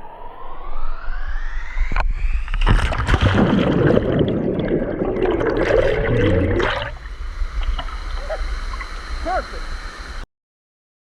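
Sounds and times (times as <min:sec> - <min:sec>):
water splashing and churning: 0:02.5 - 0:08.9
water gurgling: 0:02.5 - 0:09.4.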